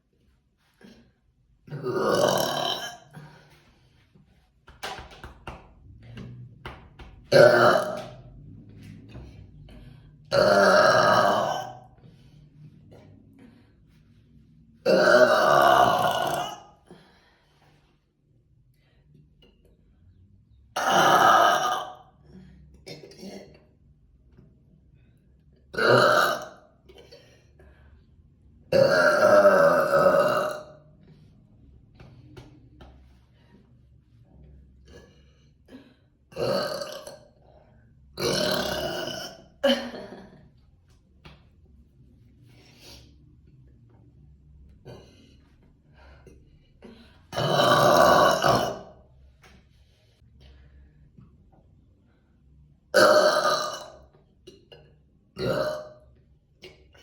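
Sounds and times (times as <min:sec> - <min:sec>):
woman burping: 0:01.7 - 0:03.3, 0:07.3 - 0:08.2, 0:10.3 - 0:11.9, 0:14.9 - 0:16.7, 0:20.8 - 0:22.0, 0:25.7 - 0:27.2, 0:28.7 - 0:30.8, 0:34.9 - 0:37.4, 0:38.2 - 0:40.5, 0:47.3 - 0:48.9, 0:53.0 - 0:56.0.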